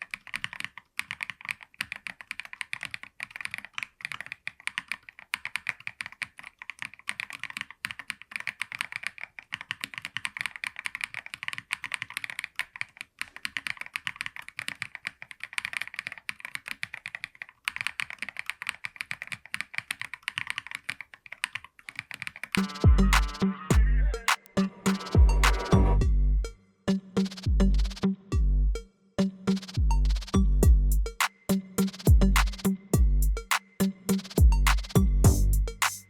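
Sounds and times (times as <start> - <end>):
fast mechanical keyboard typing: 0.0 - 22.7
electronic music with heavy bass: 22.6 - 36.0.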